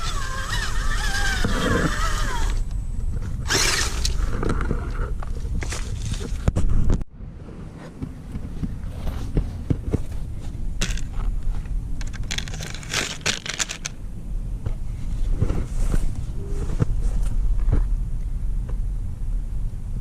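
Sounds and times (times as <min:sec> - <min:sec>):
toy truck rumbling over ground: 0:00.0 - 0:02.7, 0:03.4 - 0:06.4, 0:12.0 - 0:13.9.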